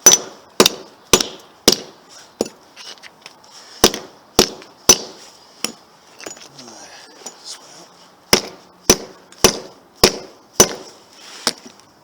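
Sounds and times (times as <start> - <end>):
sledgehammer striking metal: 0.0 - 2.6, 3.8 - 6.4, 8.3 - 11.0.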